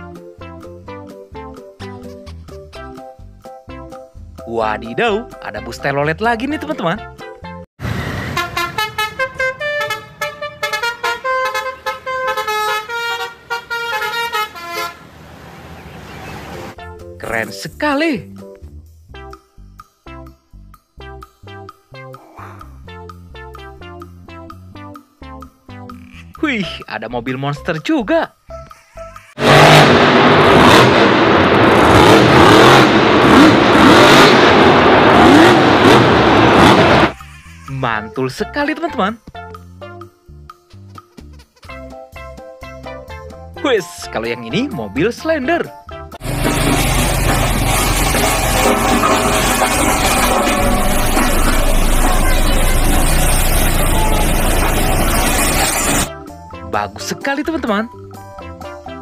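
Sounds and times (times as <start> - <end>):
multi-tone bus horn melody: 8.2 - 15.1, 48.3 - 56.1
loud engine revving: 29.4 - 37.2, 46.2 - 56.1.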